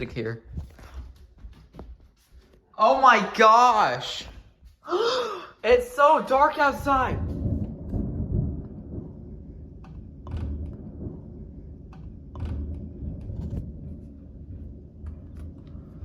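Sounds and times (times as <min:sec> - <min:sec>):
low rumble: 0:05.7 - 0:16.0.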